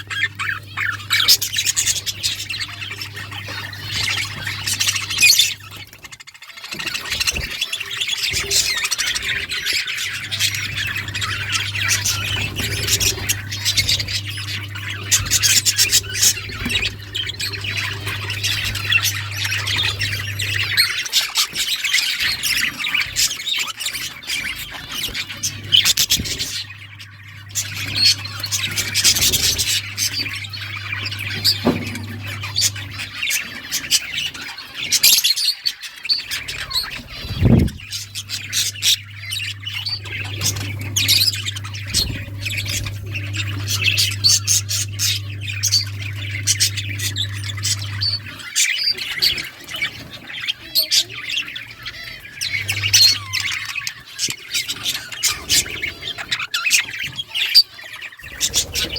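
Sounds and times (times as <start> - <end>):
budgerigars chirping and squawking: 0.0 - 58.9
steady low hum: 8.2 - 21.1, 24.1 - 34.3, 36.3 - 50.4, 51.2 - 54.0.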